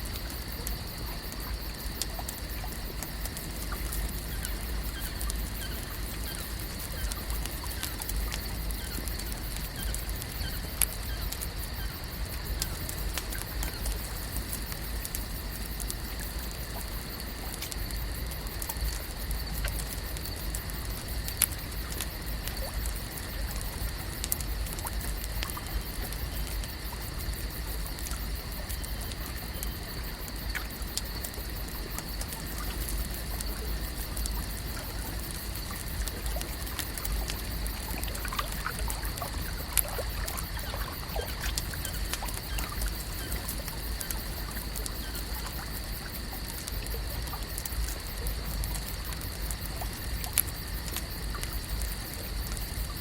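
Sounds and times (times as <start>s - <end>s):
small ticks and clicks: 0.0s - 53.0s
water lapping on shore: 32.2s - 46.8s.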